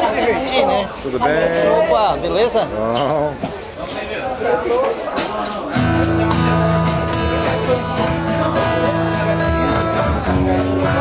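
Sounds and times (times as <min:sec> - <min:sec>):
strummed acoustic guitar: 0:04.7 - 0:11.0.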